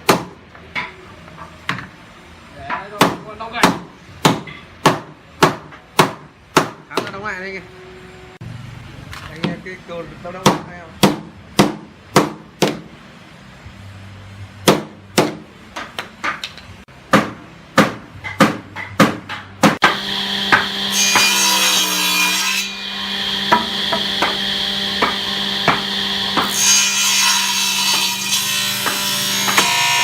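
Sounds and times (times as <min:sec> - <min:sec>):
hammer knocking on wood: 0:02.7 - 0:07.2.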